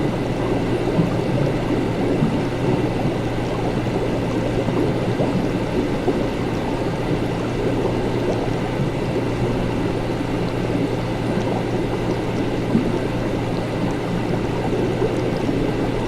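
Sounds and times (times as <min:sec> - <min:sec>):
constant low hum: 0:00.0 - 0:16.0
liquid bubbling and churning: 0:00.0 - 0:16.0.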